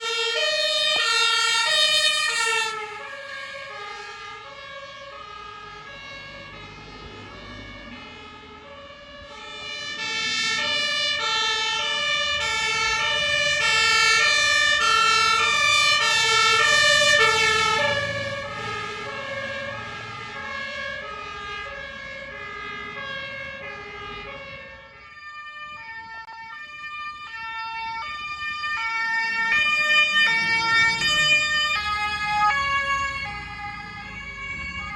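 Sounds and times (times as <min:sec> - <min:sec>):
two-tone emergency sirens: 0:00.0 - 0:34.9
engine rumble: 0:00.8 - 0:26.1, 0:27.2 - 0:34.9.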